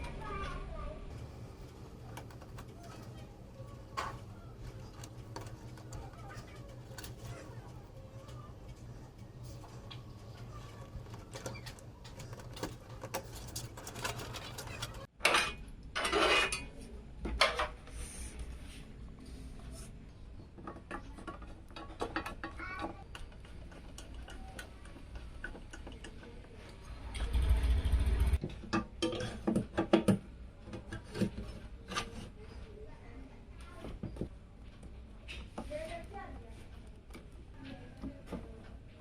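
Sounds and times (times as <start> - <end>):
computer parts clicking and clinking: 1.1 - 15.1
rustling: 1.1 - 15.1.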